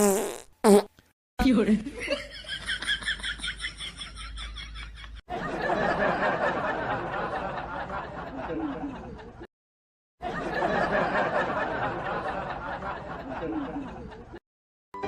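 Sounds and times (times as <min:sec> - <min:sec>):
group of people laughing: 0:01.9 - 0:09.5, 0:10.2 - 0:14.4.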